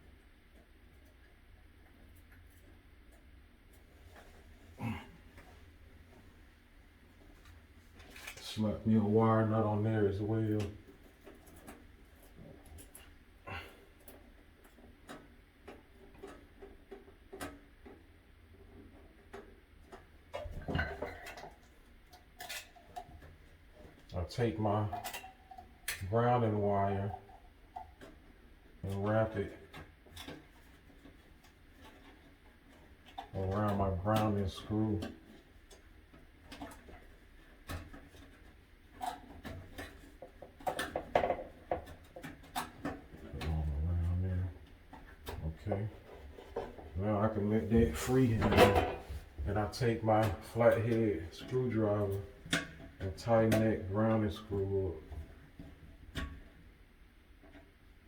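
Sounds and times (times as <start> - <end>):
clicks and taps of wiring work: 9.4 - 13.2, 14.0 - 43.8, 47.6 - 57.9.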